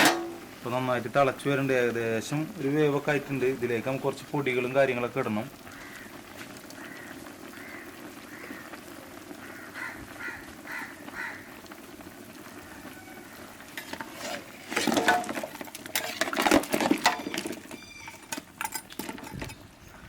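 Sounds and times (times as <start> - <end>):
ladle stirring and scraping pot: 0.0 - 0.5, 13.7 - 19.7
curry bubbling in a pot: 0.2 - 19.9.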